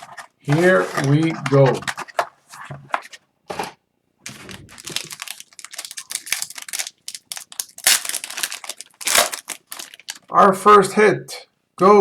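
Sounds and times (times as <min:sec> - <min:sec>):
wrapper tearing and crinkling: 0:04.3 - 0:10.3.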